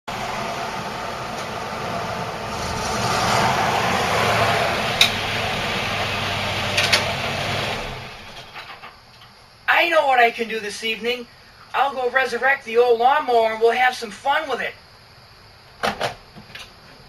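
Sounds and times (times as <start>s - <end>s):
engine running: 0.0s - 8.7s.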